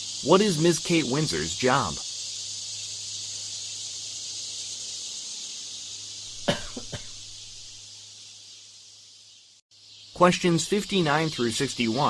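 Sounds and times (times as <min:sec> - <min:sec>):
steady hiss: 0:00.0 - 0:12.0
person coughing: 0:06.4 - 0:07.2.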